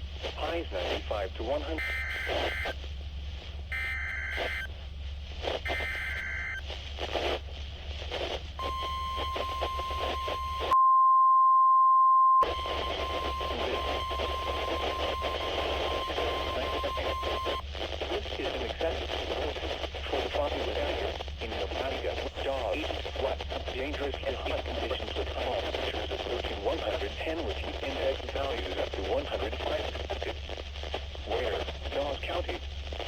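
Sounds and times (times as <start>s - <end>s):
radio static: 0.2s - 10.8s, 12.4s - 33.0s
weather radio alarm tone: 3.7s - 4.7s, 5.7s - 6.6s, 8.6s - 10.8s, 12.4s - 17.6s
digital data bursts screeching: 5.7s - 6.6s, 12.4s - 17.6s.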